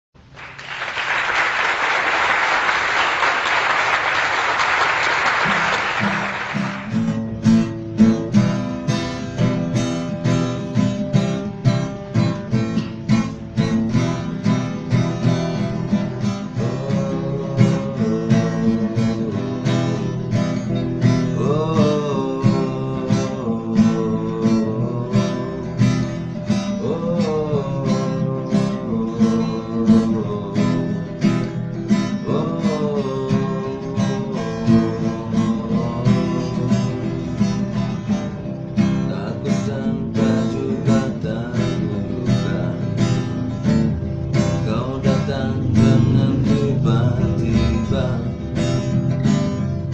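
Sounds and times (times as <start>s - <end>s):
acoustic guitar strumming: 3.0s - 49.9s.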